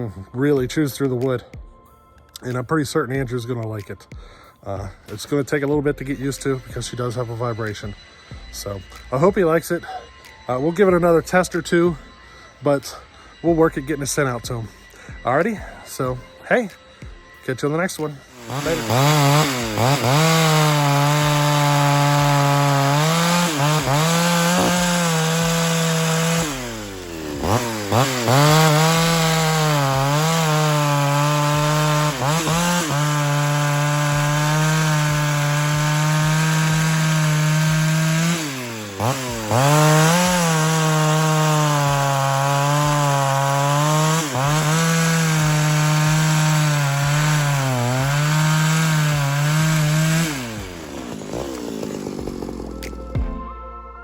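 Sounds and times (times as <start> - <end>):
chainsaw cutting wood: 12.7 - 53.5.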